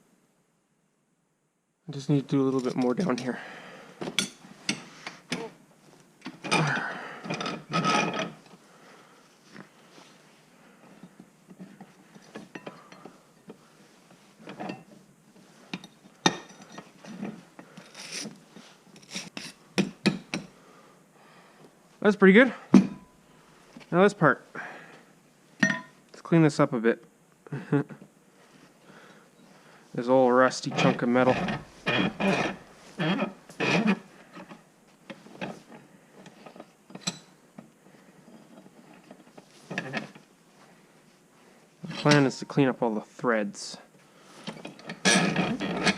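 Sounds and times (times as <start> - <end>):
metal scraping on rusty wrench: 6.4 - 8.4, 15.8 - 18.4, 19.0 - 19.6, 30.5 - 34.5, 38.4 - 40.2, 41.8 - 42.5, 44.6 - 45.9.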